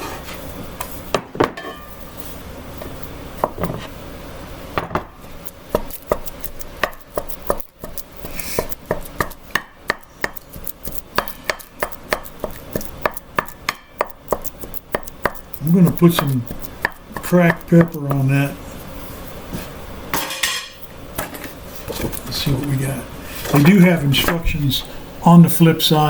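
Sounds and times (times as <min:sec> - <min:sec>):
knife chopping on cutting board: 0:05.7 - 0:18.3.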